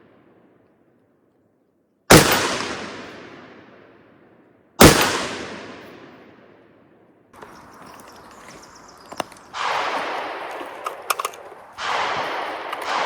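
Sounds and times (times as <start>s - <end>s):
rifle shots echoing: 2.1s - 4.0s, 4.8s - 6.7s, 7.4s - 13.0s.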